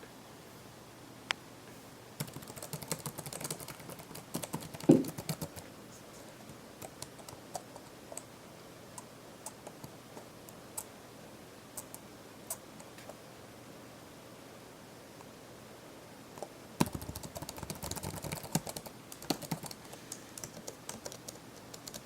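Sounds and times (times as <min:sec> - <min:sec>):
laptop keyboard typing: 0:02.2 - 0:05.6, 0:06.5 - 0:08.3, 0:16.4 - 0:22.0
loud thump: 0:04.9 - 0:05.1.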